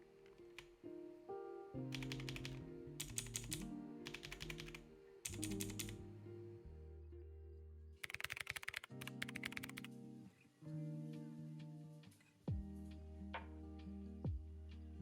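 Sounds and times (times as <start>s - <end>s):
background music: 0.0s - 15.0s
mechanical keyboard key clicks: 1.9s - 6.0s, 8.0s - 9.9s.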